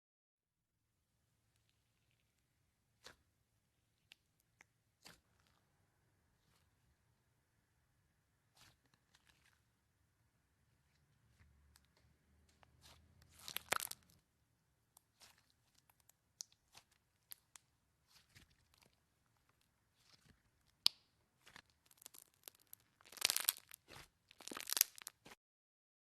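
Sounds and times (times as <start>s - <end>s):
slime clicking and crackling: 11.7s - 14.3s, 15.0s - 25.4s.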